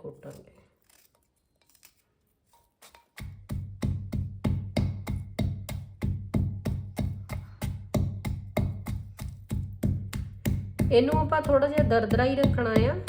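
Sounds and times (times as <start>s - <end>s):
pestle pounding in a mortar: 3.0s - 13.0s.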